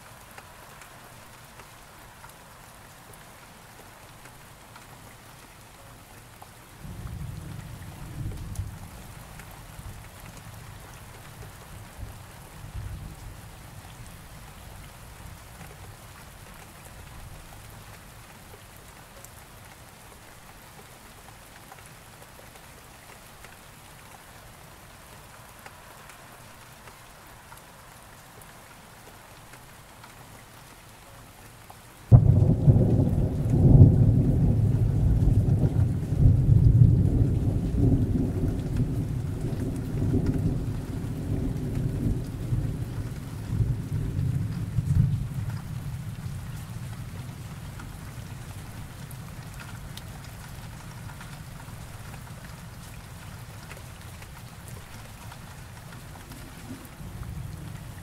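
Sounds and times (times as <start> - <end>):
steady rain falling: 0.0 - 58.0
low thunder rumble: 32.1 - 47.5.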